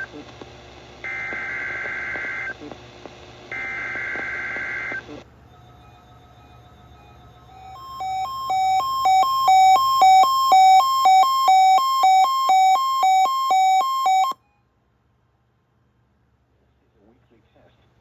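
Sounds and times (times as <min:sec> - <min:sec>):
alternating two-pitch electronic beeps: 0:05.5 - 0:14.4.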